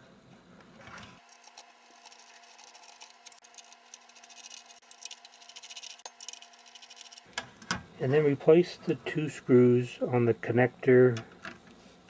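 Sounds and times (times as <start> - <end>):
screwdriver turning screws in metal: 1.2 - 7.3.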